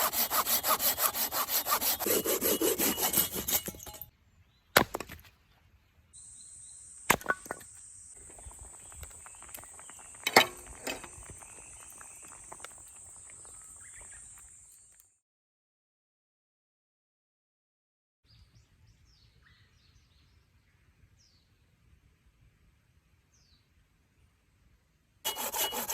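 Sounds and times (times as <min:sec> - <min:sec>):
pruning saw cutting wood: 0:00.0 - 0:04.1, 0:25.3 - 0:25.9.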